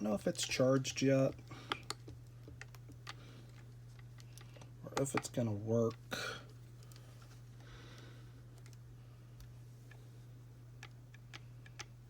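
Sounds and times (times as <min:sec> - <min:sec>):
steady low hum: 0:00.0 - 0:12.0
plastic device clicking and rustling: 0:01.3 - 0:06.0.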